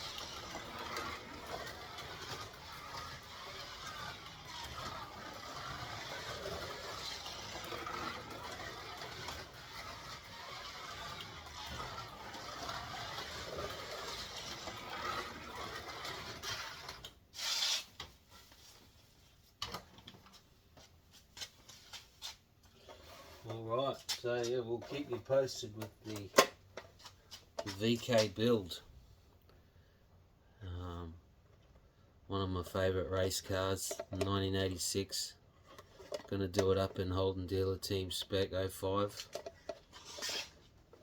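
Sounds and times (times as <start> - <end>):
slot car motor whirring: 0.0 - 17.0.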